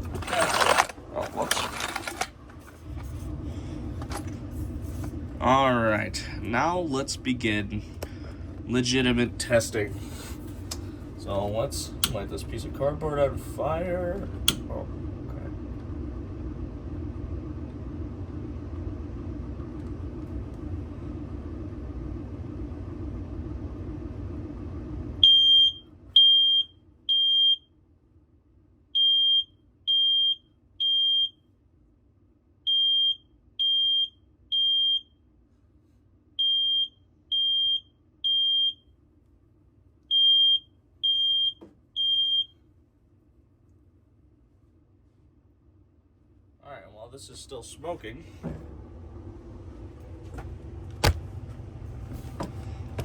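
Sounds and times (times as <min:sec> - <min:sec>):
smoke alarm beeping: 0:25.2 - 0:27.7, 0:29.0 - 0:31.4, 0:32.7 - 0:35.2, 0:36.4 - 0:38.9, 0:40.1 - 0:42.6.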